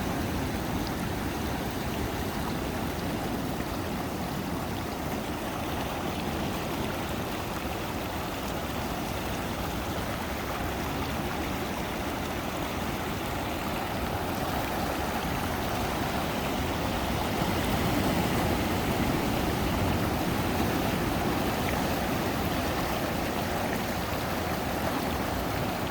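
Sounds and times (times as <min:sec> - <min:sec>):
ocean surf washing on shore: 0:09.2 - 0:25.9.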